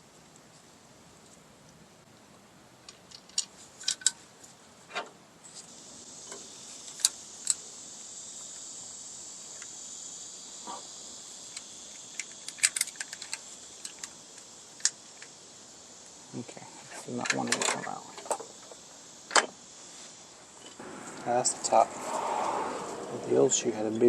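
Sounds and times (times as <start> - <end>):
steady high hiss: 0.0 - 24.0
small metal parts clinking: 2.9 - 4.2, 11.5 - 15.3.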